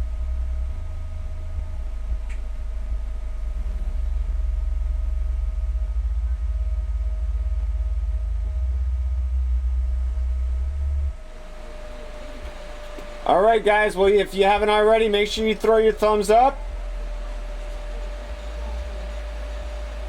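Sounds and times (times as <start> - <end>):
loud low bass test tone: 0.0 - 20.0.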